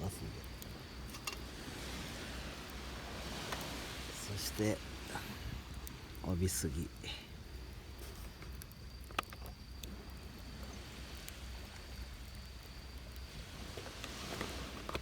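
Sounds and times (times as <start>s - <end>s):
surf washing: 0.0s - 7.2s, 13.3s - 15.0s
campfire crackling and popping: 0.0s - 15.0s
insect trill: 0.0s - 15.0s.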